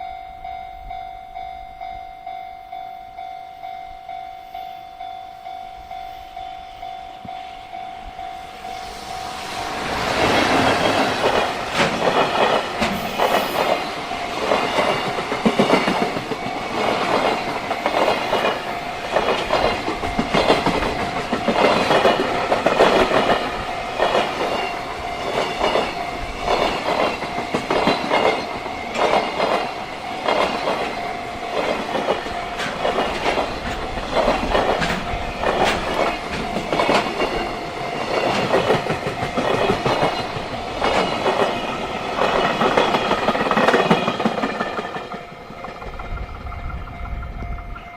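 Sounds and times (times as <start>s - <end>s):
level-crossing warning bell: 0.0s - 47.9s
train wheels clacking over rail joints: 9.7s - 47.9s.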